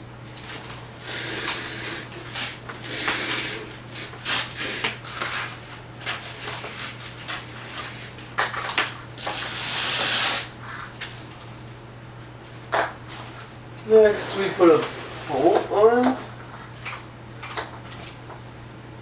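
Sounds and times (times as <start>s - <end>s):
steady low hum: 0.0s - 19.0s
scraping rustle: 14.0s - 16.3s.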